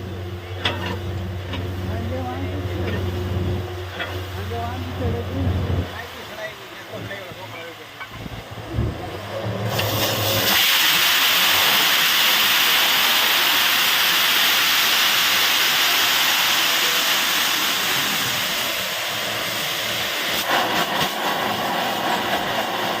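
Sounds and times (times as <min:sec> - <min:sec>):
low engine hum: 0:00.0 - 0:10.5
air and water hissing from well: 0:00.0 - 0:23.0.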